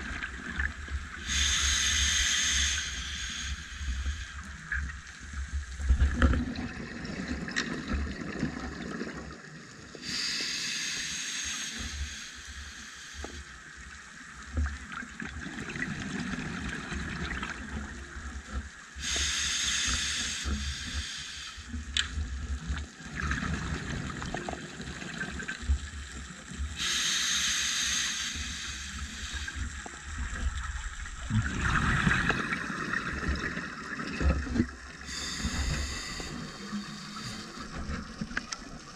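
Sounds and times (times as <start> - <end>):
regulator inhalation hiss: 1.2 - 5.2, 10.0 - 13.8, 19.0 - 21.8, 26.8 - 30.0, 35.0 - 38.0
exhaled bubbles rumbling: 5.7 - 9.4, 29.4 - 38.9.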